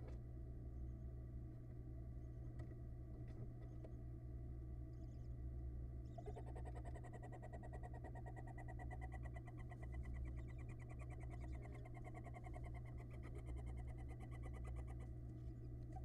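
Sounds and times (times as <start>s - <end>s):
barn owl chittering: 6.1s - 15.1s.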